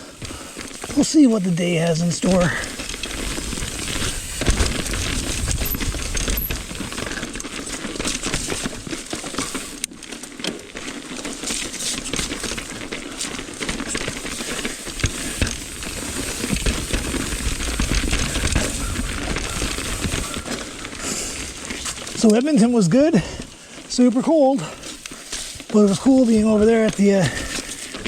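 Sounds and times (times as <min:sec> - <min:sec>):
tyres crunching on gravel: 0:00.0 - 0:28.0
bike chain rattling and clicking: 0:00.1 - 0:28.0
wind rumble on microphone: 0:02.5 - 0:07.5, 0:15.4 - 0:22.2.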